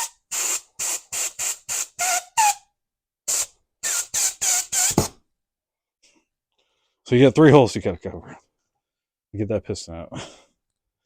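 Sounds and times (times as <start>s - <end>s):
brief whistle: 0.0s - 2.7s.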